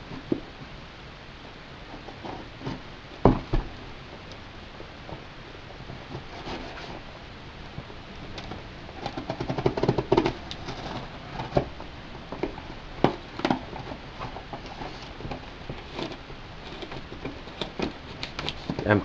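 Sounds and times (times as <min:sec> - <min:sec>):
box being handled: 0:05.9 - 0:07.1, 0:08.5 - 0:19.0.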